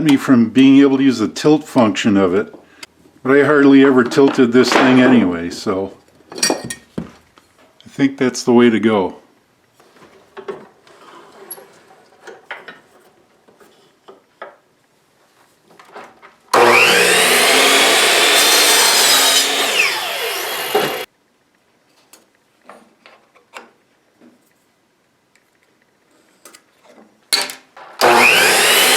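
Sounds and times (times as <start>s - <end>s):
handling knocks and clicks: 6.3s - 7.4s
power saw cutting wood: 16.5s - 21.1s, 28.0s - 28.9s.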